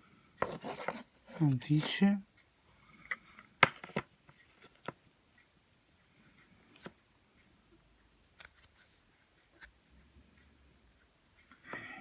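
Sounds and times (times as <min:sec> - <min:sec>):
soft scrape: 0:00.4 - 0:01.5.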